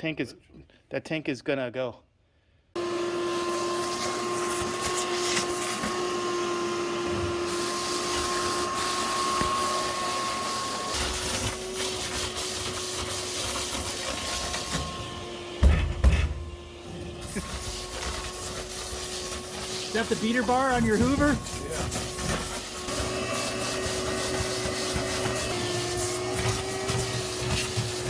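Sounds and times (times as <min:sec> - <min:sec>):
vacuum cleaner motor running: 0:02.8 - 0:28.0.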